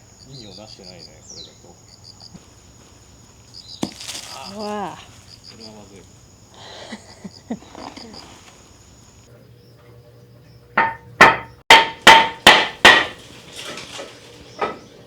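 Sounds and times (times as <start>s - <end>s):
hammer blows ringing: 10.8s - 13.2s.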